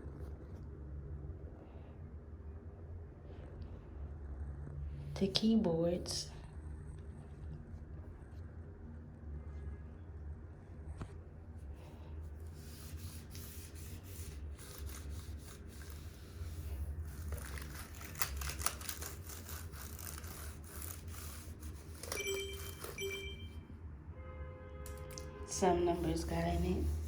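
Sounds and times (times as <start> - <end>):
steady low hum: 0.0 - 27.0
short tones: 22.1 - 23.7.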